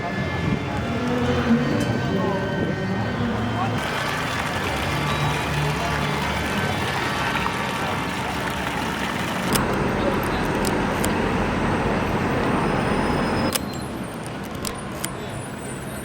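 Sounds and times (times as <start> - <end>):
indistinct voices: 0.0 - 13.5
road traffic: 0.0 - 16.0
sharp clicks: 13.5 - 15.2.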